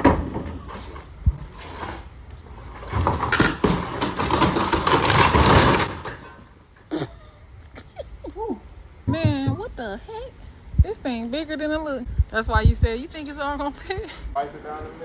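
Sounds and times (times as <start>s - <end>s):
debris clattering and scraping: 0.0s - 7.1s.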